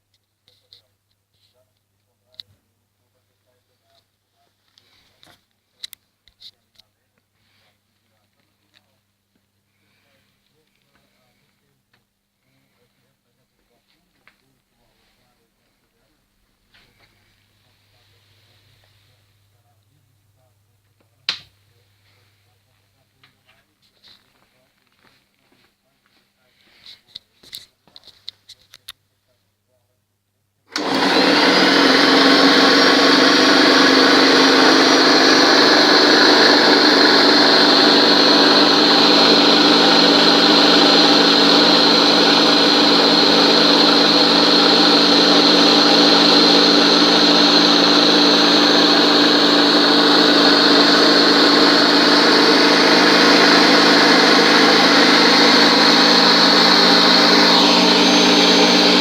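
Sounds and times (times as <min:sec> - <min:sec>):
electric jigsaw whining: 0:30.7 - 0:59.0.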